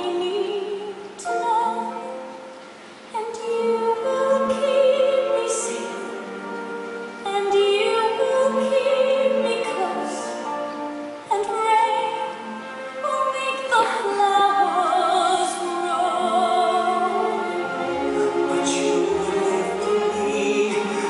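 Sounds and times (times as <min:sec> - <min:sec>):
woman singing a ballad: 0:00.0 - 0:02.3, 0:03.1 - 0:06.4, 0:07.2 - 0:10.6, 0:11.3 - 0:21.0
orchestra playing: 0:01.2 - 0:21.0.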